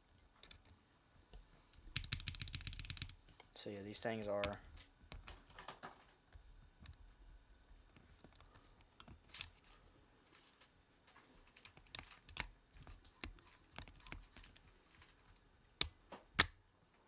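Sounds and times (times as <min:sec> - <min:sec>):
plastic keyboard key clicks: 0:01.9 - 0:03.2, 0:11.6 - 0:14.6.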